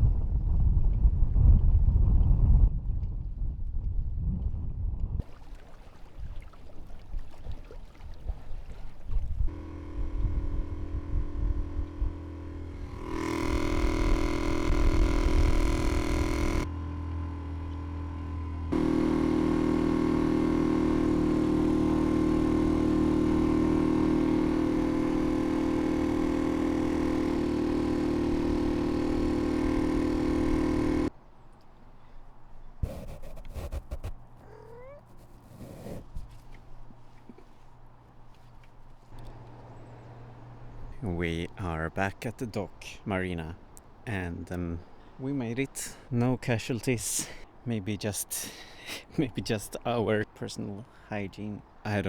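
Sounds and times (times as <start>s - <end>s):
wind: 0.0s - 52.0s
water noise: 5.2s - 16.7s
boat engine running: 5.2s - 31.1s, 32.8s - 42.2s.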